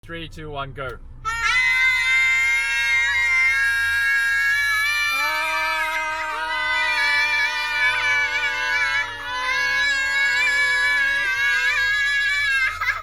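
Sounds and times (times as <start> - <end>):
voices singing a held aah: 1.3 - 13.0
lower voice singing: 4.8 - 11.8.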